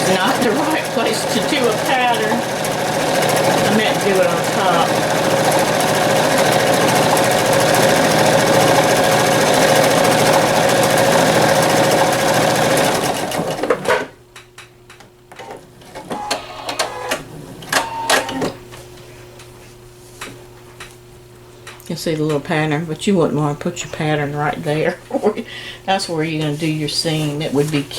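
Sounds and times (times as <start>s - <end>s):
sewing machine running: 0.0s - 14.1s, 15.8s - 18.6s.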